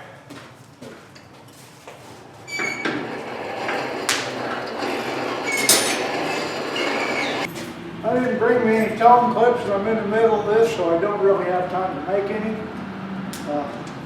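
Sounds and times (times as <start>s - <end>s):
metallic clinks of steel and tongs: 5.6s - 6.1s.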